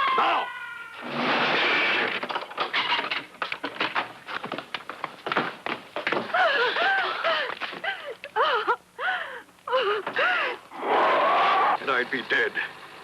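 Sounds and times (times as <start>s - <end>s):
knocks and thumps: 1.1s - 6.4s.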